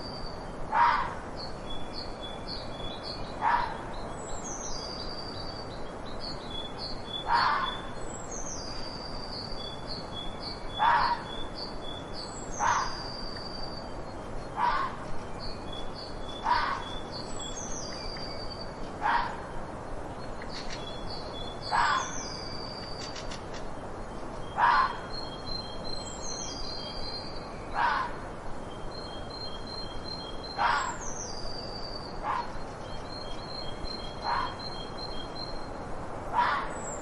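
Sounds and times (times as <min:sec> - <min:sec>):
fox barking: 0:00.7 - 0:01.2, 0:03.4 - 0:03.8, 0:07.3 - 0:07.8, 0:10.8 - 0:11.3, 0:12.6 - 0:13.0, 0:14.6 - 0:15.0, 0:16.4 - 0:16.9, 0:19.0 - 0:19.5, 0:21.7 - 0:22.1, 0:24.6 - 0:25.0, 0:27.8 - 0:28.2, 0:30.6 - 0:31.0, 0:32.2 - 0:32.6, 0:34.2 - 0:34.6, 0:36.3 - 0:36.8.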